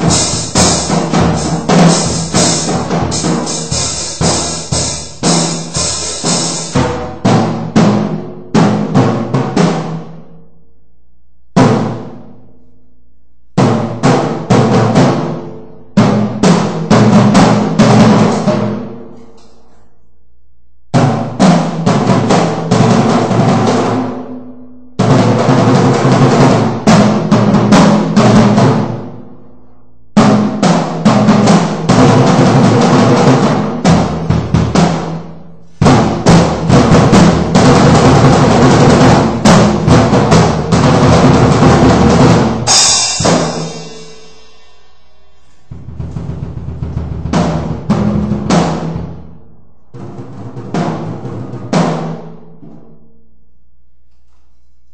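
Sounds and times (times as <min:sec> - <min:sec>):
drum kit hits and fills: 0:00.0 - 0:10.3, 0:11.6 - 0:12.4, 0:13.6 - 0:19.4, 0:21.0 - 0:24.4, 0:25.0 - 0:29.3, 0:30.2 - 0:49.4, 0:50.0 - 0:53.0
cymbal crash ringing: 0:42.7 - 0:46.0.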